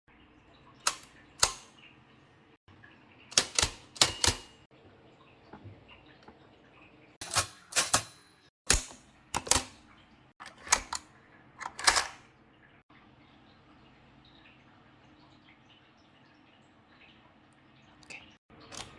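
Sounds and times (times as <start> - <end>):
manual typewriter key strikes: 0.8 - 1.7, 3.3 - 4.6, 7.2 - 9.8, 10.5 - 11.0, 11.6 - 12.2.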